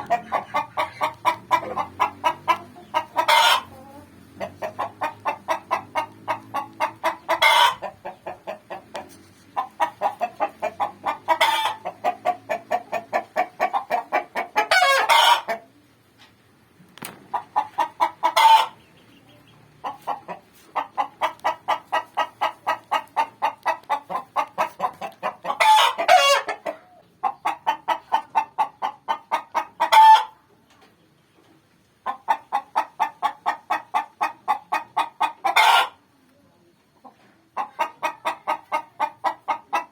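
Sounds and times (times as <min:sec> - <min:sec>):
hen cackling: 0:00.0 - 0:15.7, 0:17.3 - 0:30.4, 0:32.0 - 0:36.0, 0:37.6 - 0:39.9.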